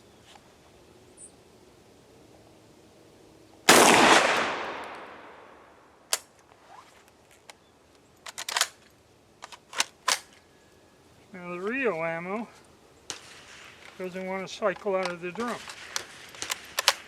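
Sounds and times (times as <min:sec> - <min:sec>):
shotgun shot: 0:03.7 - 0:05.5
shotgun action metallic clicks: 0:06.1 - 0:06.4, 0:07.4 - 0:10.5, 0:14.7 - 0:17.0.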